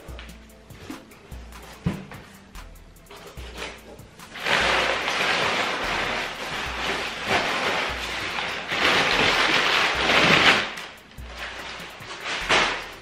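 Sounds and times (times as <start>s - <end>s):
low music beat: 0.0s - 13.0s
cardboard rustling and tearing: 3.4s - 13.0s.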